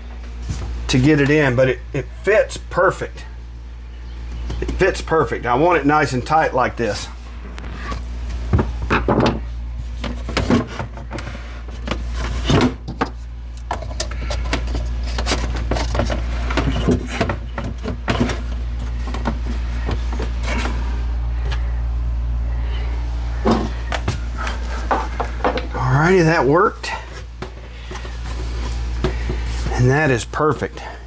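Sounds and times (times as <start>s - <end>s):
steady low hum: 0.0s - 31.0s
pipe knocking and scraping: 8.4s - 21.8s, 22.7s - 25.8s, 27.4s - 29.8s.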